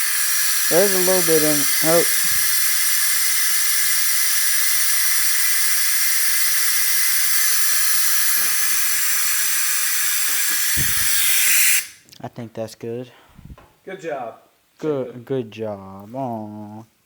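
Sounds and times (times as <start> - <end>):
air-powered fuel extractor hissing: 0.0 - 12.0.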